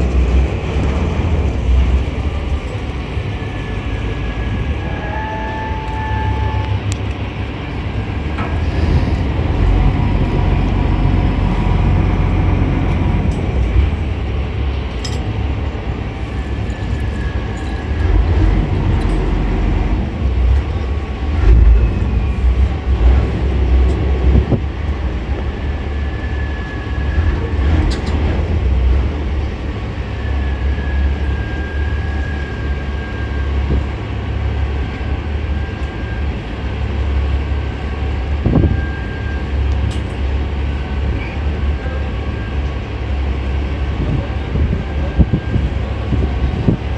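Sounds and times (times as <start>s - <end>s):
wind buffeting microphone: 43.8s - 46.9s.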